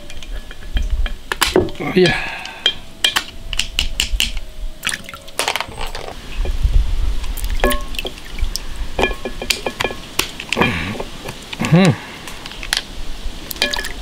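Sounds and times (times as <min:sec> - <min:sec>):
water sloshing: 0:04.8 - 0:11.6.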